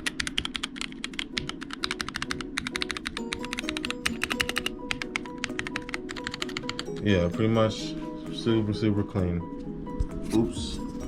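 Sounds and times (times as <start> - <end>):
fast typing on mechanical keyboard: 0.0 - 7.0
background music with held notes: 0.0 - 11.0.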